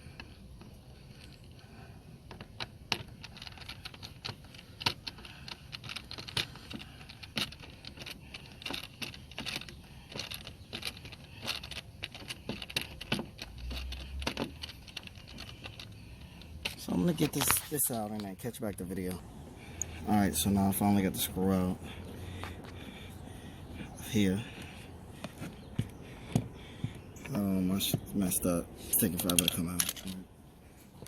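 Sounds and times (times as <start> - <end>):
screwdriver and pliers clicking: 29.1 - 30.2.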